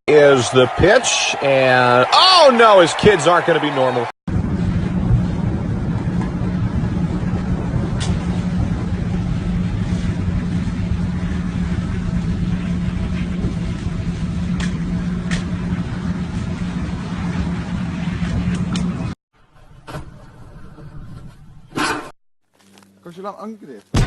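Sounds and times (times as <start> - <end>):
engine droning: 4.3 - 19.7.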